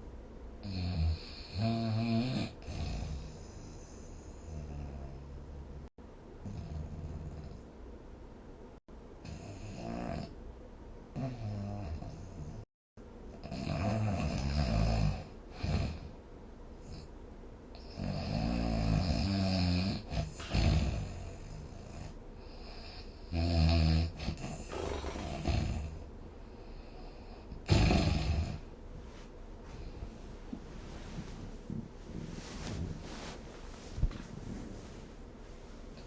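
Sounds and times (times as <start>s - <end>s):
person snoring: 0.6s - 5.3s, 22.9s - 26.0s
quiet breathing: 2.6s - 5.5s, 20.0s - 23.4s, 24.4s - 27.7s, 28.3s - 36.0s.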